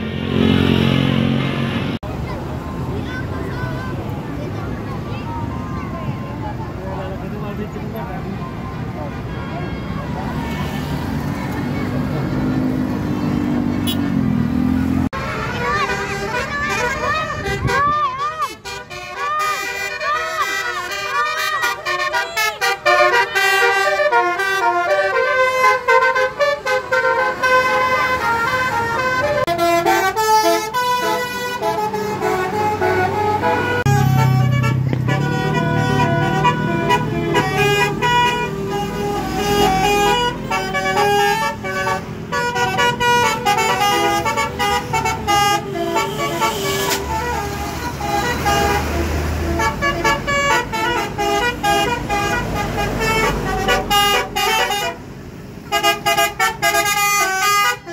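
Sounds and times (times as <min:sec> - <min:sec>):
bus engine rumbling past: 0:00.0 - 0:57.0
multi-tone bus horn tune: 0:13.7 - 0:14.3, 0:14.9 - 0:57.9.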